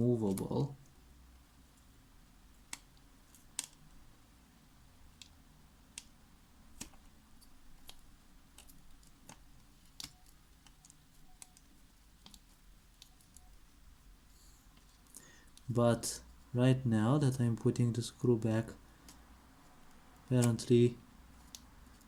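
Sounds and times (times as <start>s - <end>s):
plastic parts clicking and tapping: 6.7s - 13.5s.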